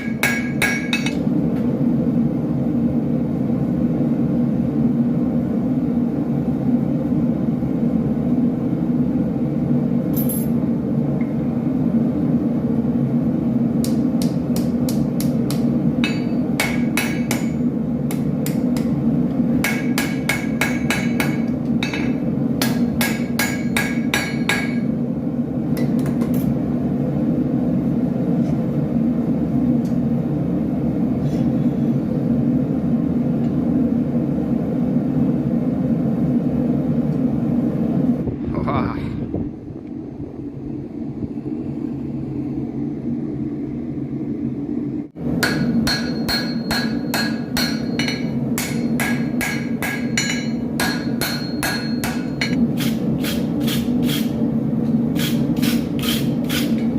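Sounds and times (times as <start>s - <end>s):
hammer striking steel on anvil: 0.0s - 1.3s, 13.8s - 19.0s, 19.6s - 24.9s, 25.8s - 26.4s, 45.4s - 54.4s
steady low hum: 0.0s - 56.9s.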